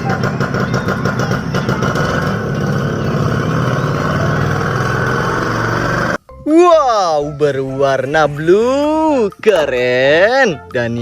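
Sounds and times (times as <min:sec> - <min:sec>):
auto-rickshaw engine running: 0:00.0 - 0:06.2.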